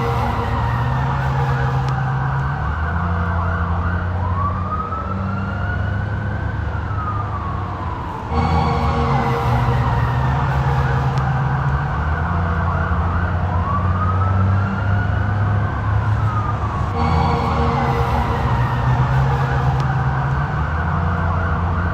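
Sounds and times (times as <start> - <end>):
police siren wailing: 0.0 - 21.9
steady low rumble: 7.8 - 13.8, 15.6 - 21.9.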